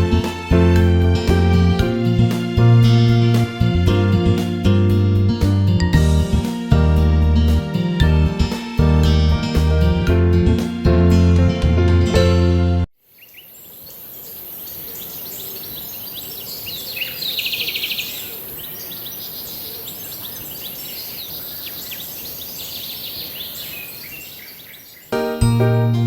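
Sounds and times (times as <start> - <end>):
small birds chirping: 13.0 - 25.2.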